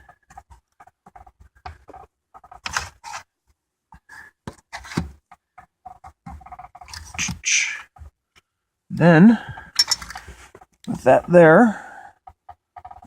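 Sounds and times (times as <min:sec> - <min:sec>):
plastic parts clicking and knocking: 0:00.0 - 0:03.3, 0:04.0 - 0:08.5, 0:09.4 - 0:11.4, 0:12.0 - 0:13.0.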